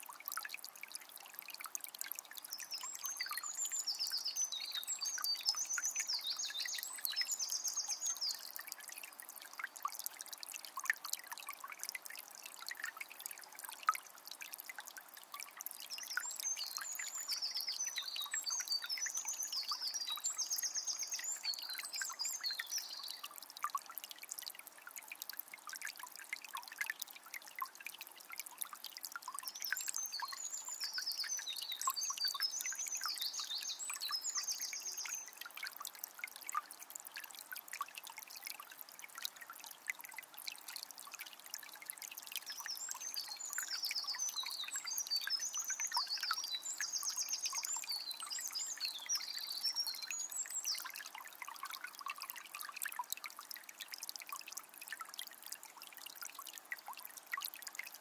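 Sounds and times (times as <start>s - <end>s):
river trickling and babbling: 0.0s - 58.0s
songbird singing: 2.5s - 8.6s, 15.9s - 23.3s, 29.4s - 35.5s, 42.4s - 51.2s.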